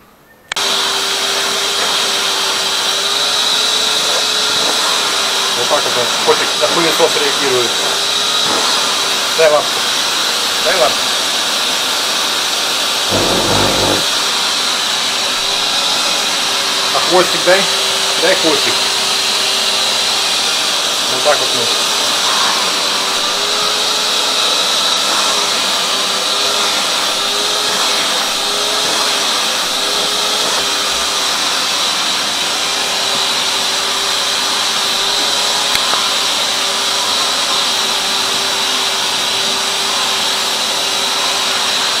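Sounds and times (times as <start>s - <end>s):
vacuum cleaner running: 13.1s - 14.1s, 18.7s - 42.0s.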